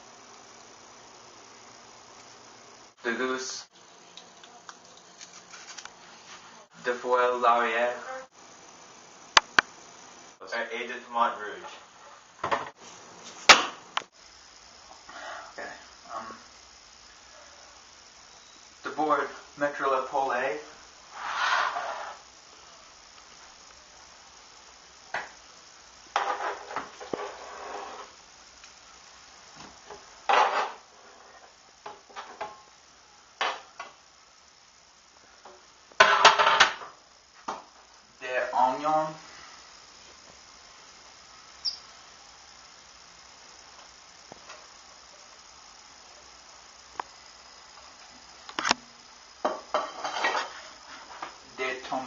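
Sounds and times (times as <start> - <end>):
high-pitched whine: 14.1 - 27.4
clattering and rustling in pan: 26.1 - 28.2, 29.9 - 32.7, 36.0 - 36.9, 49.5 - 51.4.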